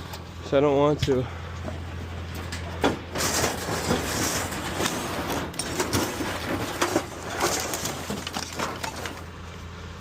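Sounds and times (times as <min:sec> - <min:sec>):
scrap metal scraping and rattling: 0:01.6 - 0:09.6.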